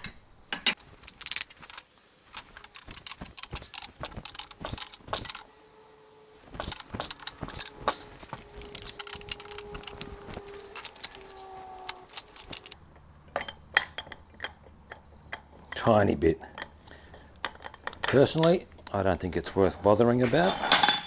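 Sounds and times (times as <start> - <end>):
wrench clicking on metal: 0.8 - 5.4, 6.5 - 12.8.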